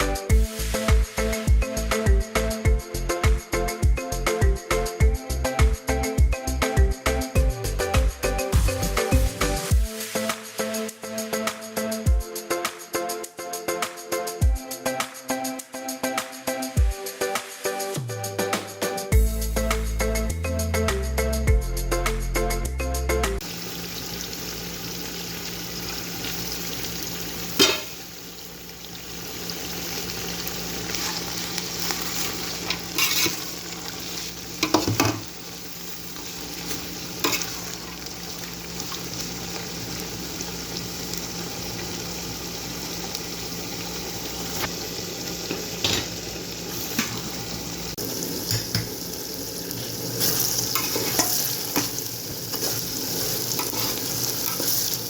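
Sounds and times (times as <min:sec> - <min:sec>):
food sizzling in hot oil: 0:23.4 - 0:55.0
spoon clanking against pot: 0:32.1 - 0:33.5, 0:34.6 - 0:35.3, 0:37.2 - 0:37.8, 0:50.8 - 0:51.9.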